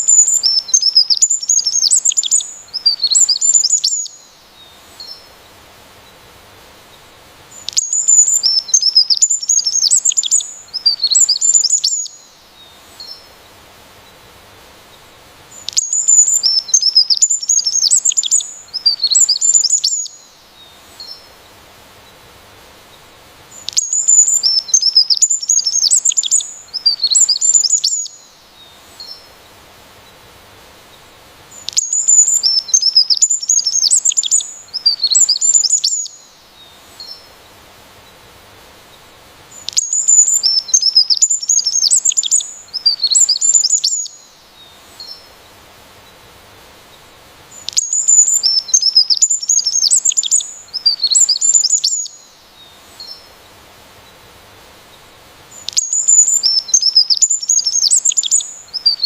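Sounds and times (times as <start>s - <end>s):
songbird chirping: 0.0s - 59.0s.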